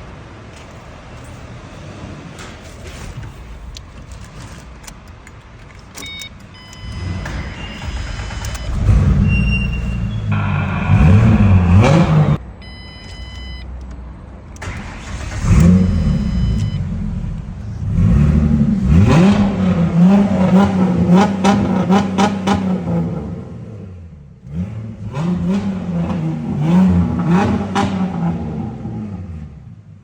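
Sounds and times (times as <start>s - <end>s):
car engine revving: 6.8s - 12.4s, 14.6s - 30.0s.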